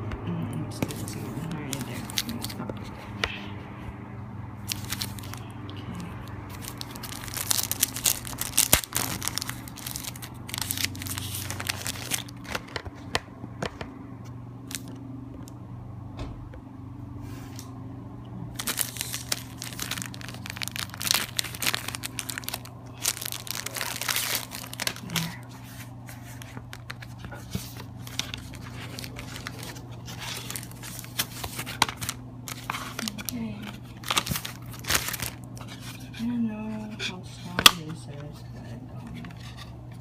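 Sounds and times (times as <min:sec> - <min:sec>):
low hum: 0:00.0 - 0:40.0
packaging crinkling and tearing: 0:00.8 - 0:03.0, 0:04.6 - 0:05.4, 0:06.5 - 0:13.1, 0:14.7 - 0:15.0, 0:18.6 - 0:36.1.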